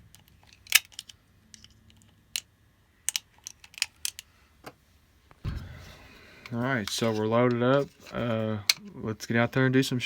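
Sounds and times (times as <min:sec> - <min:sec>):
cartridges clicking into magazine: 0:00.2 - 0:01.2.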